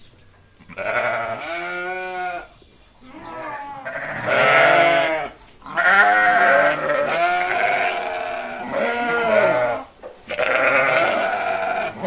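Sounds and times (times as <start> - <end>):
goats bleating: 0.6 - 12.0.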